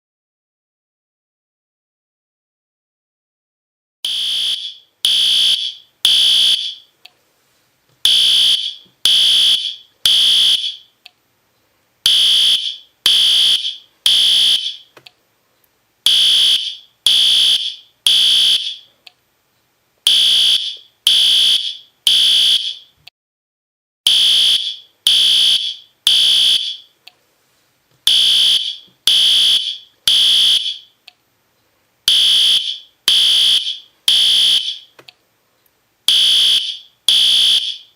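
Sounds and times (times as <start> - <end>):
fire alarm horn blasts: 4.0 - 6.9, 8.0 - 10.9, 12.0 - 14.9, 16.1 - 18.9, 20.1 - 23.0, 24.1 - 26.9, 28.1 - 31.0, 32.1 - 34.9, 36.1 - 37.9.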